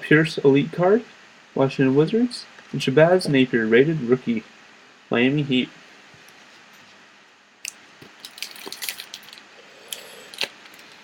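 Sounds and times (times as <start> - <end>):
wrapper crinkling: 7.7 - 11.0.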